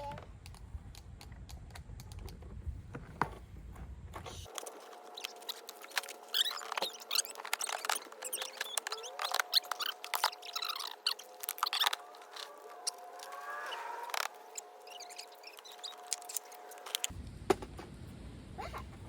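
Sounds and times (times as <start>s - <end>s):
hand tools clicking and scraping: 3.0s - 17.1s.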